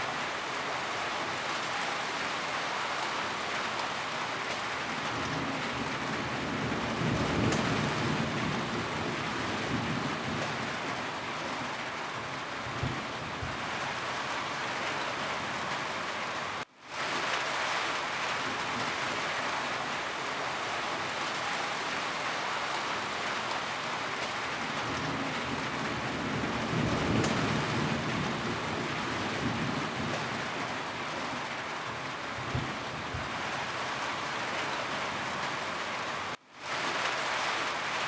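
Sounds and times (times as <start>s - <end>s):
rain on a roof: 0.0s - 38.0s.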